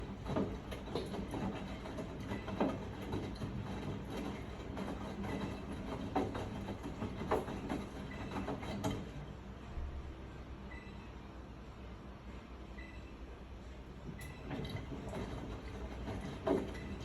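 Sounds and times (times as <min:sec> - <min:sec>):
washing machine spinning: 0:00.0 - 0:10.2, 0:13.8 - 0:17.0.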